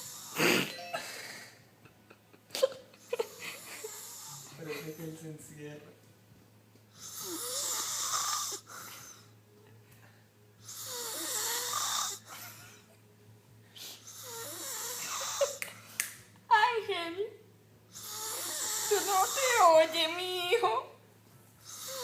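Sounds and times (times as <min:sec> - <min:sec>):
person snoring loudly: 0:00.0 - 0:00.8, 0:07.0 - 0:08.7, 0:10.6 - 0:12.3, 0:14.1 - 0:15.6, 0:17.9 - 0:19.6, 0:21.6 - 0:22.0.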